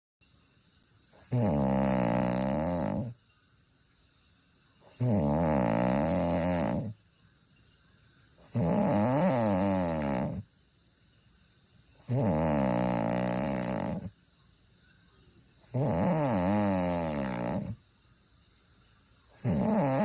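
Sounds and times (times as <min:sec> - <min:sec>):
person snoring: 0:01.2 - 0:03.2, 0:04.9 - 0:07.0, 0:08.5 - 0:10.4, 0:12.0 - 0:14.1, 0:15.7 - 0:17.8, 0:19.4 - 0:20.0.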